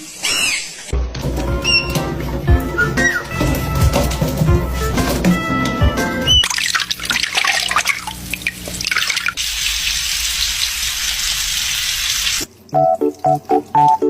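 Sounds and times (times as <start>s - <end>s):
light plucked music: 1.0s - 6.4s, 12.7s - 14.0s
water running from a tap: 6.3s - 14.0s.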